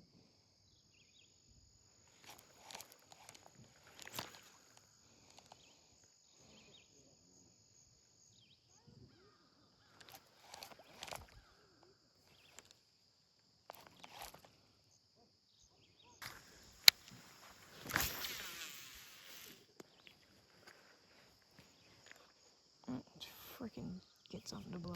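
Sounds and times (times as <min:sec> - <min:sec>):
insects droning: 0:00.0 - 0:24.9
rustling and handling noises: 0:02.1 - 0:06.1, 0:09.9 - 0:11.5, 0:13.7 - 0:14.8, 0:16.2 - 0:22.6.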